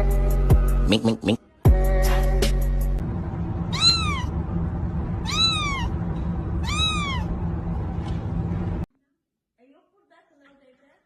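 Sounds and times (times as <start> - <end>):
steady low rumble: 1.7 - 8.9
cat meowing: 3.6 - 4.4, 5.2 - 7.4.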